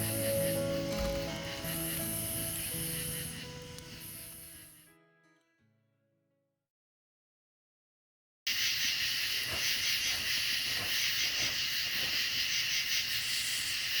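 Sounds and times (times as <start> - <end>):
steady dense hiss: 0.0 - 4.8.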